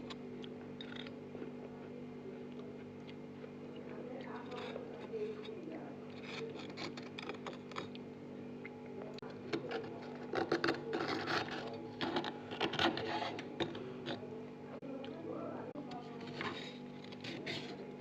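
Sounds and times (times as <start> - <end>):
freezer frost crunching: 0.0 - 14.4
steady low hum: 0.0 - 18.0.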